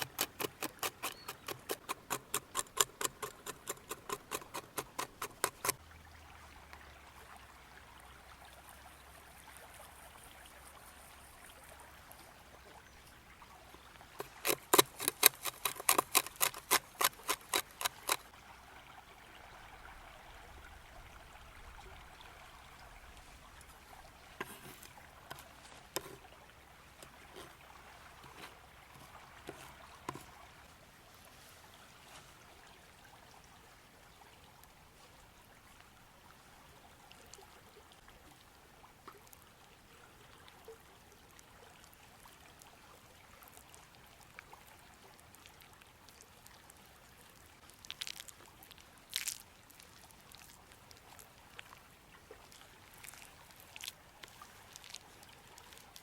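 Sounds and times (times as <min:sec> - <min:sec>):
quick rhythmic tapping: 0:00.0 - 0:05.8
scattered ticks: 0:00.0 - 0:05.8, 0:14.2 - 0:18.3
river flowing: 0:00.0 - 0:36.9, 0:46.0 - 0:56.0.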